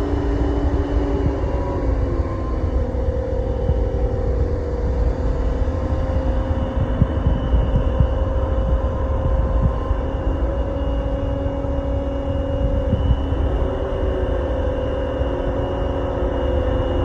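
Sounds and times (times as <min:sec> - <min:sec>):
crane engine running: 0:00.0 - 0:17.0.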